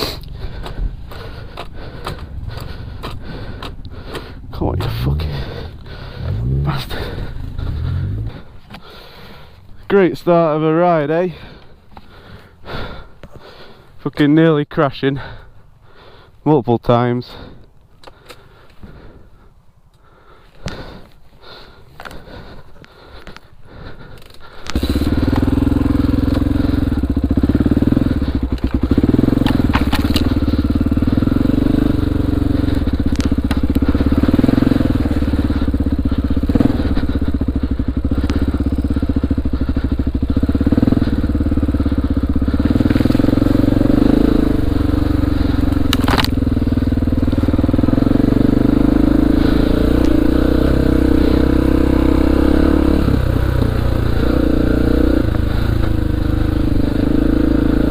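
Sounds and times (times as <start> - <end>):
motorcycle engine running: 0.0 - 14.3, 20.0 - 57.9
sharp knocks from bike: 29.4 - 30.4, 45.9 - 46.4.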